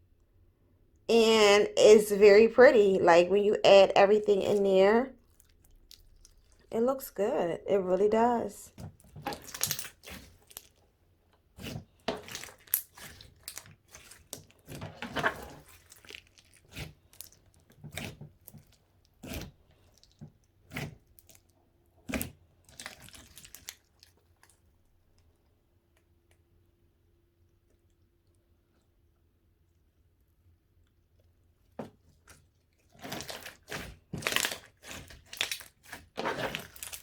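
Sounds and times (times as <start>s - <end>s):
slime popping and crackling: 9.2s - 10.8s, 11.6s - 14.8s, 15.4s - 20.2s, 22.1s - 24.1s, 32.9s - 37.0s.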